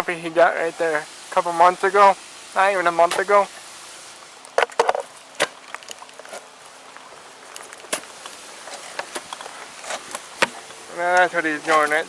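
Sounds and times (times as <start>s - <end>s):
hoe chopping and scraping soil: 4.6s - 6.5s, 7.5s - 12.0s.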